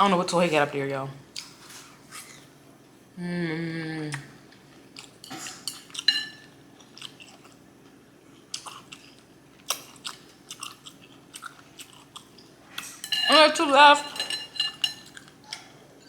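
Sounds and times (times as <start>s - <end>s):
chewing and lip-smacking: 6.8s - 13.0s.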